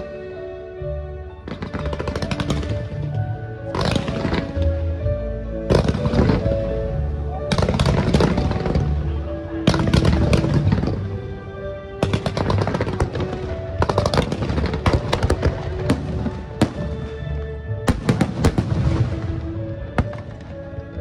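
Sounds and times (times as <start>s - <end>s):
music with sustained notes: 0.0s - 21.0s
fireworks bangs and crackles: 1.3s - 21.0s.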